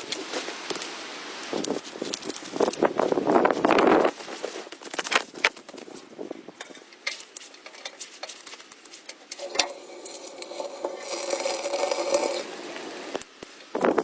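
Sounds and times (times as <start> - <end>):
hiss: 9.4 - 13.6.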